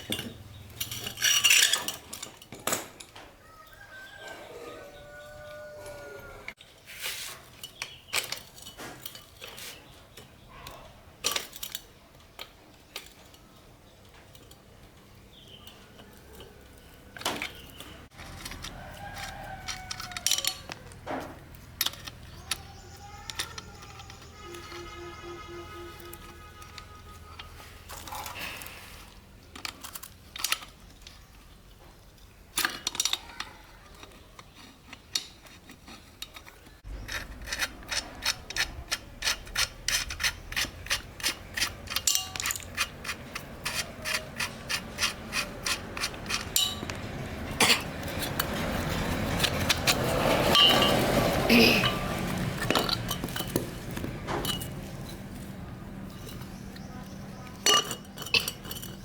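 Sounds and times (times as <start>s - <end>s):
metal tools clinking: 0.0s - 3.2s, 17.2s - 28.8s, 34.4s - 59.0s.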